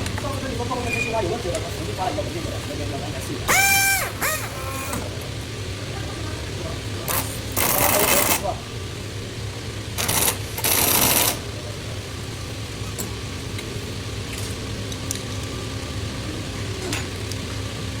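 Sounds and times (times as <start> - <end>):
low machinery hum: 0.0 - 18.0
overlock sewing machine running: 10.0 - 11.4.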